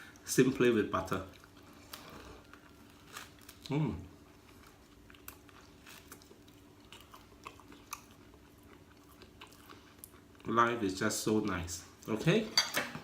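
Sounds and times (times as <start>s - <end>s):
chewing bread: 0.9s - 10.8s.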